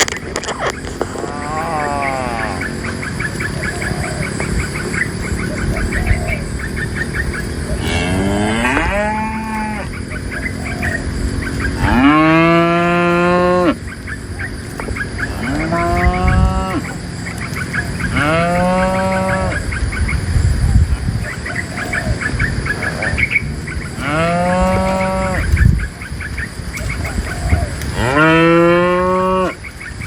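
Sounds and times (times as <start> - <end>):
cattle mooing: 0.5 - 3.0, 7.8 - 9.9, 11.7 - 13.8, 15.2 - 17.1, 18.1 - 19.7, 23.9 - 25.5, 27.9 - 29.6.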